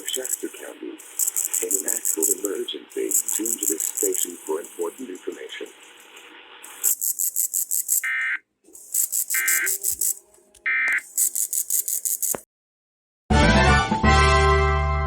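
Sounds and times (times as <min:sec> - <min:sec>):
harsh buzzy data tones: 0:00.0 - 0:12.4
music: 0:13.3 - 0:15.0.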